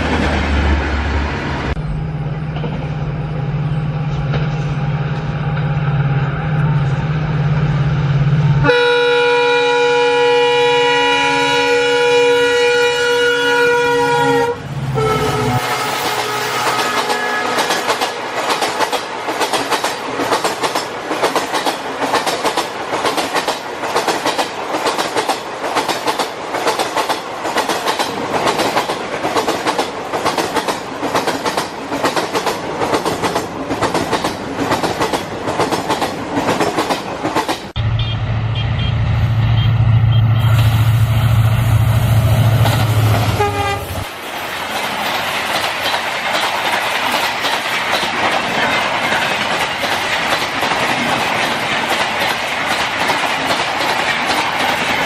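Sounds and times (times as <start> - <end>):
deep train rumble: 0.0 - 55.0
train wheels clicking on rails: 15.6 - 37.8, 44.0 - 55.0.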